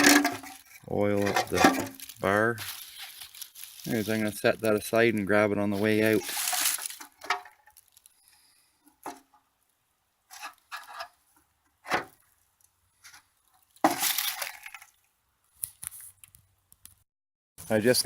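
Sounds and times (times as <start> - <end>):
scraping rustle: 0.0 - 5.0, 5.6 - 8.1.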